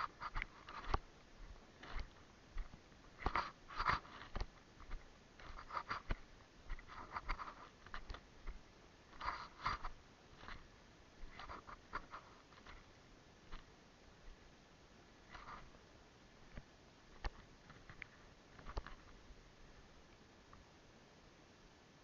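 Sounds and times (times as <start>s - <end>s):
rustling and crunching: 0.0s - 14.4s, 15.2s - 15.8s.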